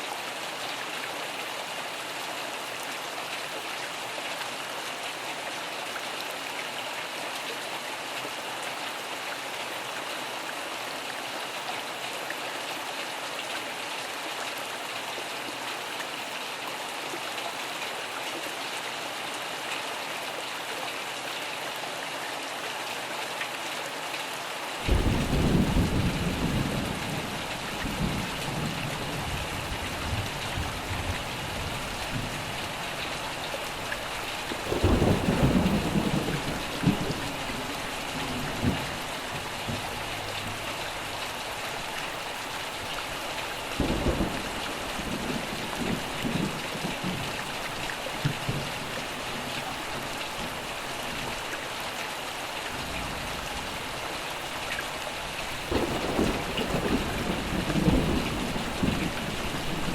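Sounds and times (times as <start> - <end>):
steady rain falling: 0.0 - 59.9
thunder rumbling: 55.7 - 59.9.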